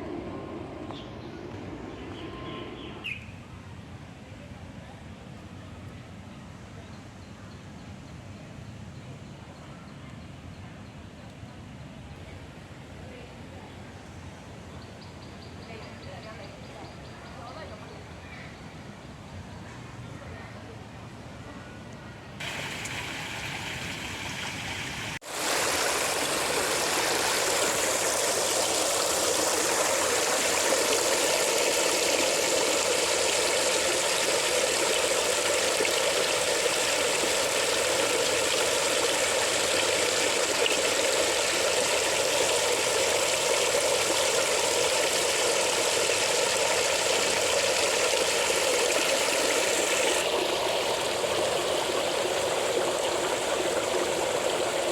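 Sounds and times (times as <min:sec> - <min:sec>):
running water rushing: 0:22.4 - 0:54.9.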